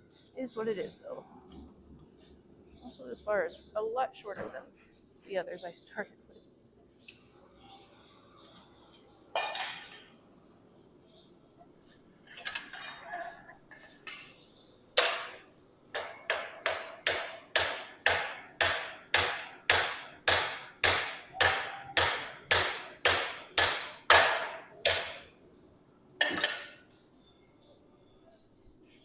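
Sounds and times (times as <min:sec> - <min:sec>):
hammer striking steel bar: 0:15.0 - 0:15.4, 0:16.0 - 0:25.3.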